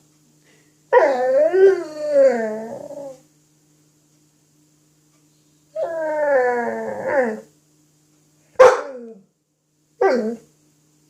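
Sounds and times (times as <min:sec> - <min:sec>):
puppy howling: 0:00.9 - 0:03.2, 0:05.8 - 0:07.5, 0:08.6 - 0:09.2, 0:10.0 - 0:10.4
puppy whining: 0:00.9 - 0:03.3, 0:05.8 - 0:07.5, 0:10.0 - 0:10.5
puppy barking: 0:08.6 - 0:09.1
puppy yelping: 0:08.6 - 0:09.1.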